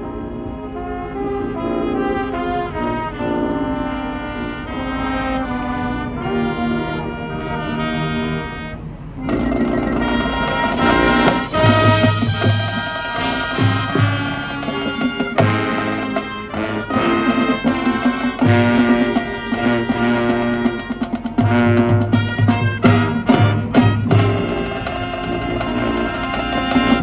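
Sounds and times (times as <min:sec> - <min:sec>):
marching band brass chords: 0:00.0 - 0:27.0
drum hits: 0:09.2 - 0:27.0.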